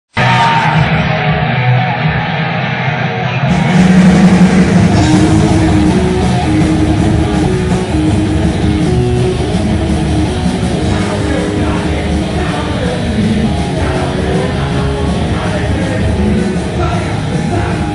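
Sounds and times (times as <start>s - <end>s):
rock band playing: 0.1s - 17.9s.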